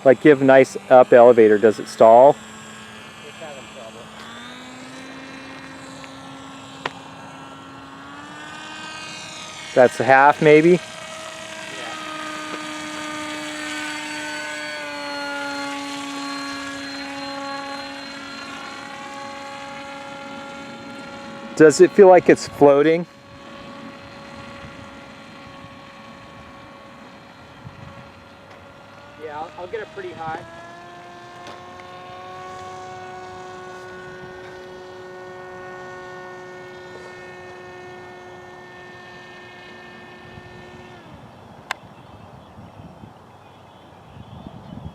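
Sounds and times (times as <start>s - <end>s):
model plane propeller drone: 0.0s - 44.9s.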